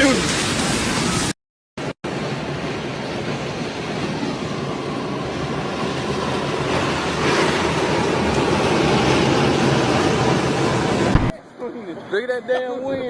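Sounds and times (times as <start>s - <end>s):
storm wind buffeting microphone: 2.1s - 11.4s.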